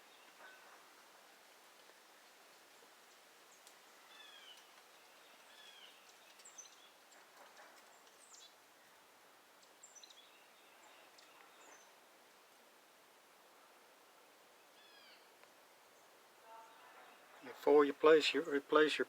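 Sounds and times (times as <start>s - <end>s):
background hiss: 0.0s - 19.0s
faint bird chirps: 3.1s - 8.9s, 14.6s - 17.6s.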